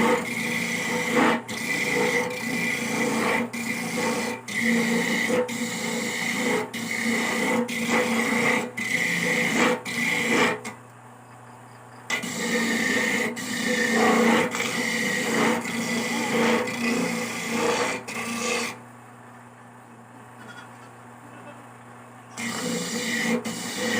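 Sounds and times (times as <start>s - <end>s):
coconut grater rasping strokes: 0.0s - 10.8s, 12.1s - 18.8s, 22.4s - 23.9s.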